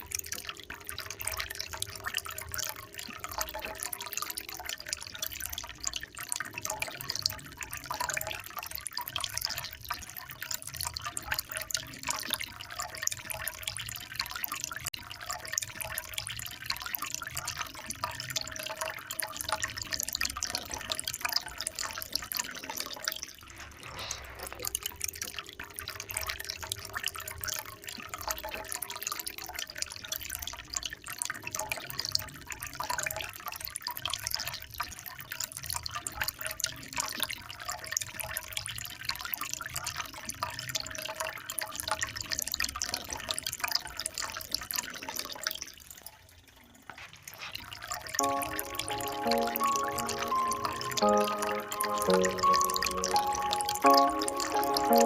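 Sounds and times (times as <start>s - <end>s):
water dripping and trickling: 0.0s - 55.0s.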